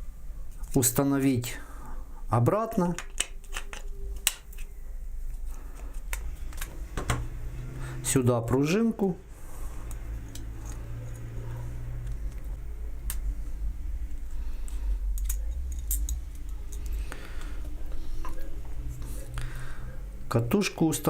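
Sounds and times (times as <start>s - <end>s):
steady low hum: 0.0s - 21.0s
plastic and metal parts clicking: 3.0s - 4.7s.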